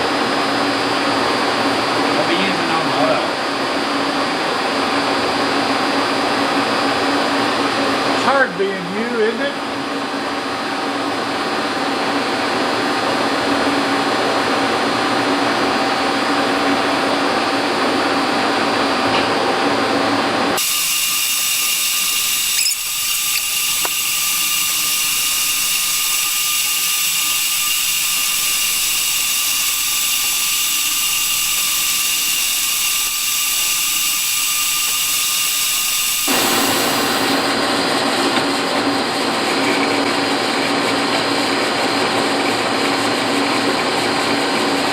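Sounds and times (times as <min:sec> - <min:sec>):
power tool whining: 0:20.6 - 0:37.6.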